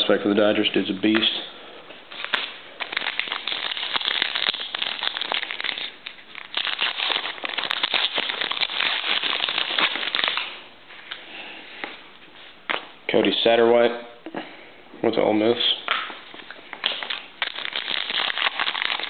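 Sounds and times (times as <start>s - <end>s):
wrapper tearing and crinkling: 2.1s - 10.6s, 16.8s - 19.0s.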